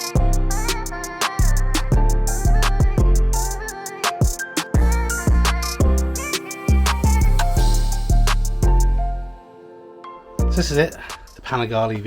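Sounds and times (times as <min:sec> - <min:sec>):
deep bass notes: 0:00.2 - 0:03.5.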